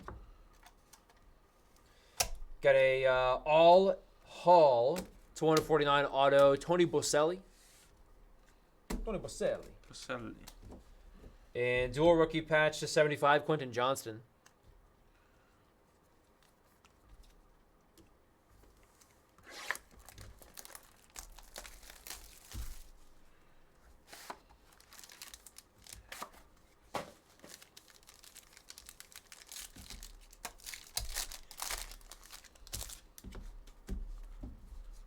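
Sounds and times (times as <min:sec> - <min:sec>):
wrappers crumpled: 0:18.8 - 0:23.3, 0:24.0 - 0:33.8
card packs being torn open: 0:19.4 - 0:23.1, 0:24.1 - 0:33.8.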